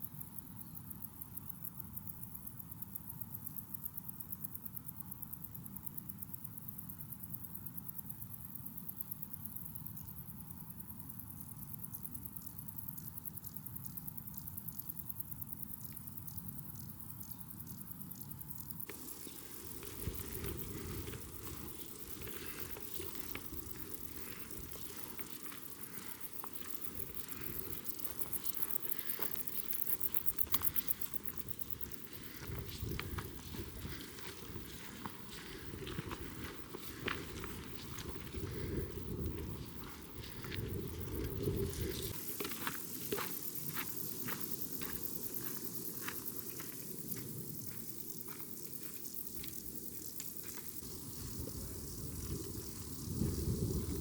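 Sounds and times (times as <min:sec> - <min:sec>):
footsteps on trail: 0:18.8 - 0:54.0.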